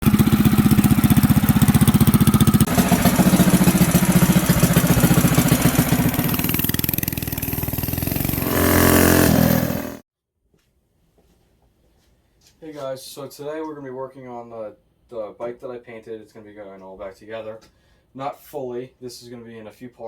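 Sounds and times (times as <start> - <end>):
mini bike engine revving: 0.0 - 10.0.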